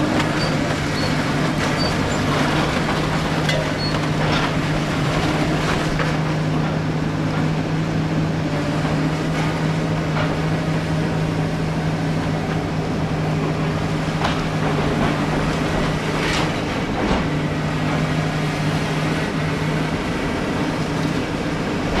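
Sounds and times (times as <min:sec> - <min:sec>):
excavator diesel engine running: 0:00.0 - 0:22.0
machine knocks and clanks: 0:14.1 - 0:18.6.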